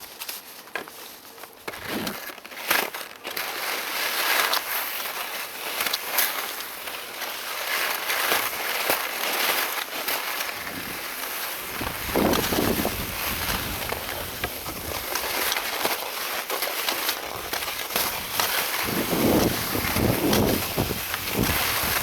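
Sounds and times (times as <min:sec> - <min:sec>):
skis scraping over snow: 0:00.0 - 0:22.0
wind on microphone: 0:11.7 - 0:15.0, 0:18.2 - 0:22.0.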